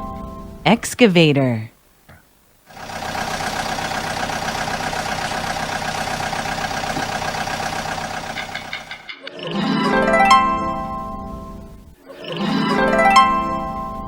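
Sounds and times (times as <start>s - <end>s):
excavator engine running: 2.7s - 9.1s.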